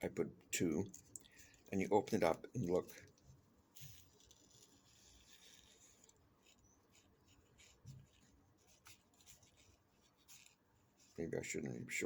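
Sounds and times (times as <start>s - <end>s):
paper scraping: 3.8s - 11.4s.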